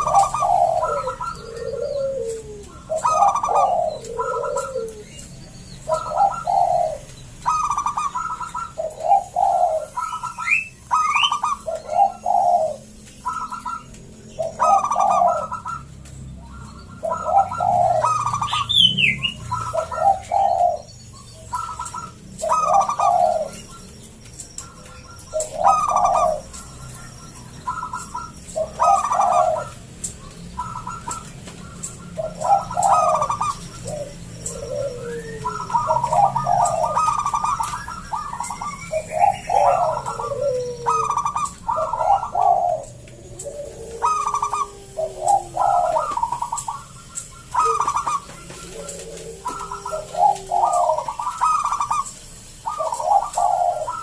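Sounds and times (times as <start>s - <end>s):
dove cooing: 0.0s - 54.0s
high bird chirps: 0.0s - 54.0s.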